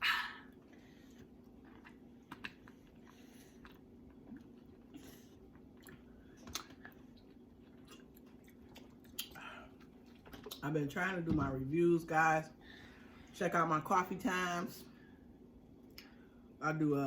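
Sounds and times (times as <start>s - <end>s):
faint steady hum: 0.0s - 17.0s
soft chewing of food: 0.4s - 10.7s.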